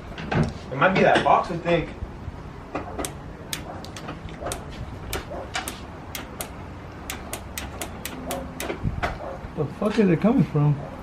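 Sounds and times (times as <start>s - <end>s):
sharp electrical clicking: 3.0s - 8.8s.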